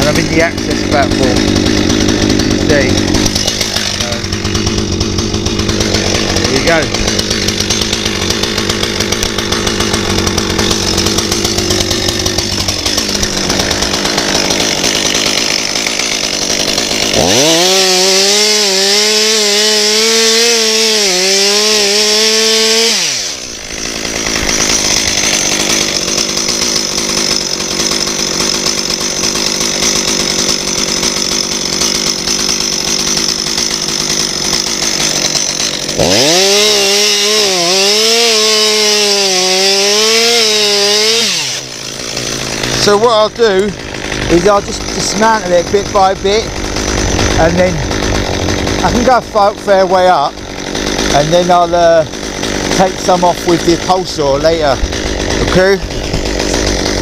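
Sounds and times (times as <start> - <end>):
chainsaw cutting limbs: 0.0 - 57.0.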